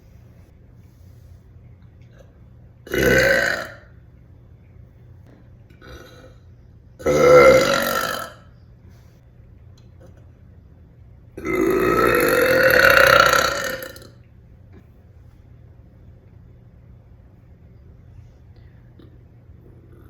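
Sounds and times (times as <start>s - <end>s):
woman burping loudly: 2.9s - 3.9s, 5.8s - 6.3s, 7.0s - 8.5s, 11.4s - 14.2s.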